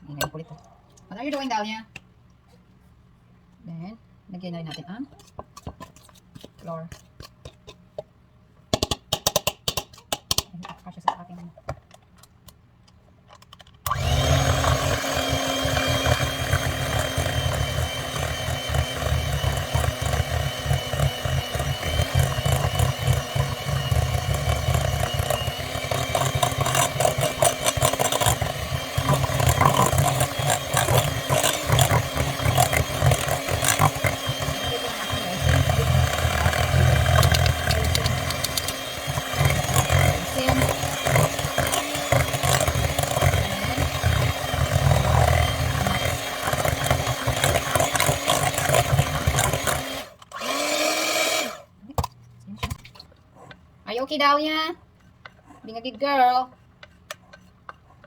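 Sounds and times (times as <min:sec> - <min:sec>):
electric mixer running: 0:13.9 - 0:51.7.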